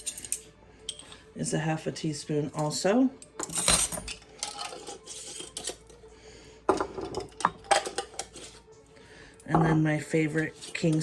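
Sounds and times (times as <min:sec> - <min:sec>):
utensils and jars clinking: 0:00.0 - 0:01.2, 0:02.4 - 0:06.0, 0:06.7 - 0:08.6, 0:09.4 - 0:11.0.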